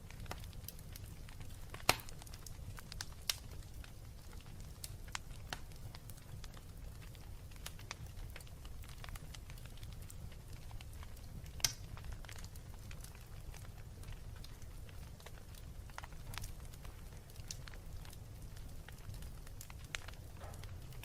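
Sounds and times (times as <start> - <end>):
burning logs popping: 0.0 - 21.0
low rumble of flames: 0.0 - 21.0
wood fire crackling: 0.0 - 21.0.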